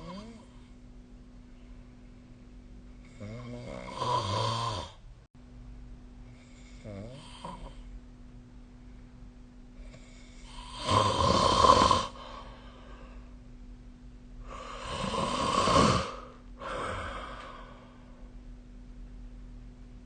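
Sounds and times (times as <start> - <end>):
person snoring: 0.0 - 0.8, 3.0 - 5.0, 6.4 - 7.9, 9.8 - 12.8, 14.4 - 18.1.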